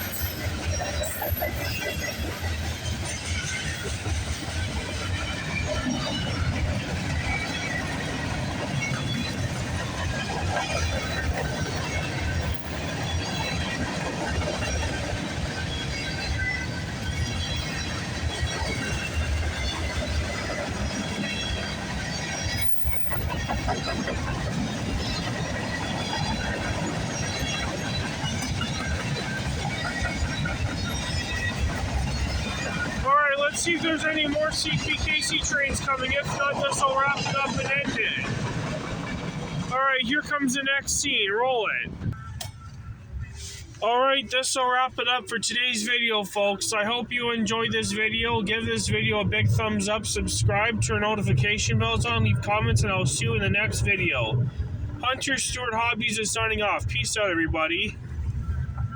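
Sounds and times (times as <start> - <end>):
faint wheel squeals: 0.0 - 3.9, 10.5 - 33.0
freight train rumbling on rails: 0.0 - 58.9.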